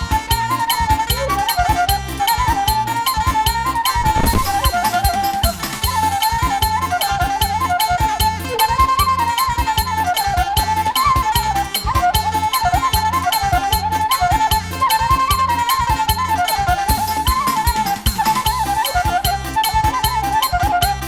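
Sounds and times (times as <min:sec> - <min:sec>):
flute-like melody: 0:00.0 - 0:21.0
drum beat and bass: 0:03.9 - 0:06.8.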